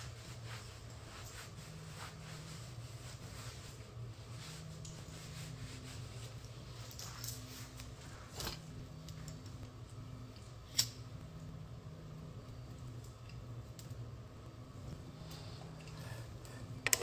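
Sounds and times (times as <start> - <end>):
soft rustle: 0.0 - 10.6
low steady hum: 0.0 - 17.0.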